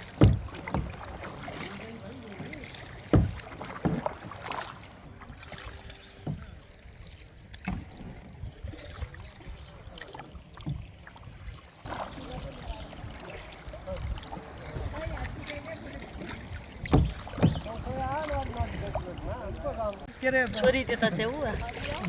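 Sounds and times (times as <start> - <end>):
paddles splashing in water: 0.0 - 22.0
sharp knocks: 0.2 - 1.0, 3.1 - 4.2, 16.9 - 17.7.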